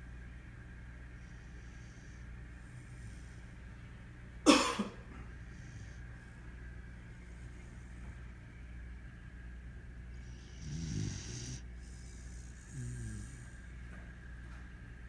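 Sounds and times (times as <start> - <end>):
low background hum: 0.0 - 15.0
dog snoring: 1.2 - 3.6, 5.3 - 6.4, 10.1 - 14.0.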